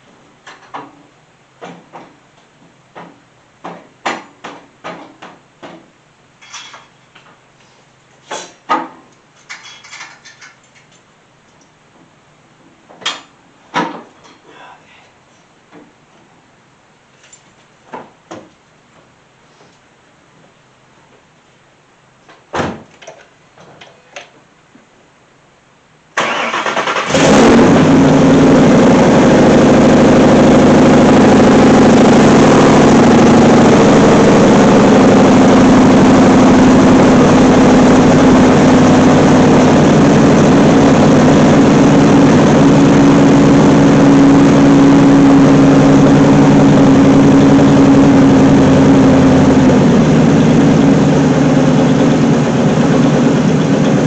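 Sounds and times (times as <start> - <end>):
car starter cranking: 26.2 - 27.8
car engine idling loudly: 27.1 - 54.0.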